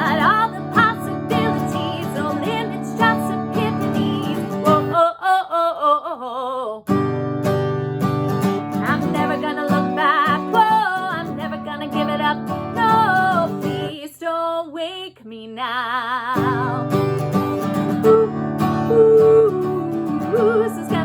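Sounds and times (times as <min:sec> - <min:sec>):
strummed acoustic guitar: 0:00.0 - 0:05.0, 0:06.9 - 0:13.9, 0:16.3 - 0:21.0
person singing: 0:00.0 - 0:06.9, 0:08.8 - 0:17.0, 0:17.9 - 0:21.0.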